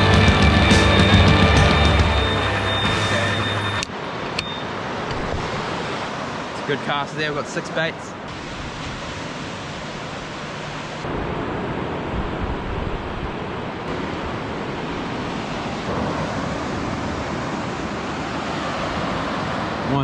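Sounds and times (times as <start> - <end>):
surf washing: 0.0 - 20.0
wind noise: 8.3 - 19.4.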